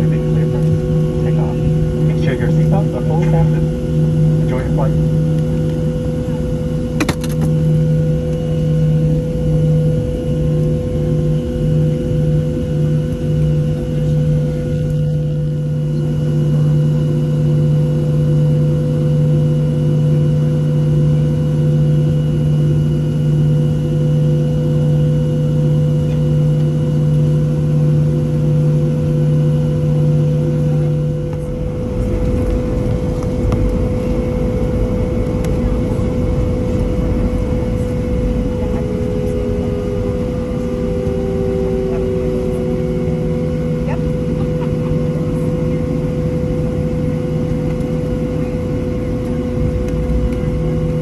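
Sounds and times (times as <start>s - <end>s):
jet engine hum with tones: 0.0s - 51.0s
low jet rumble: 0.0s - 51.0s.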